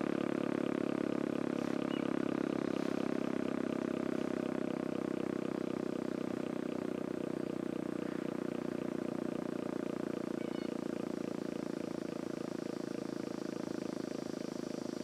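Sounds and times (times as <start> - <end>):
warning siren fluttering tone: 1.6 - 4.4, 10.2 - 12.0.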